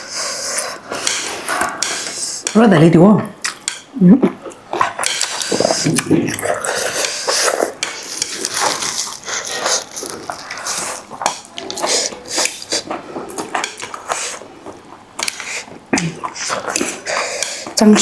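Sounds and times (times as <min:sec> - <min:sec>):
noodle slurping: 0:05.0 - 0:17.9.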